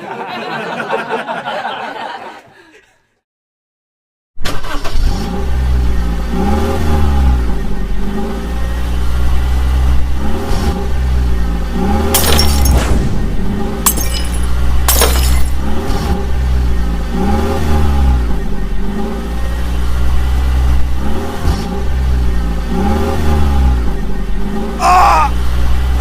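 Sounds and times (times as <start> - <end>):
heavy engine revving: 4.6 - 13.9, 15.5 - 26.0
clattering crash: 12.1 - 15.8.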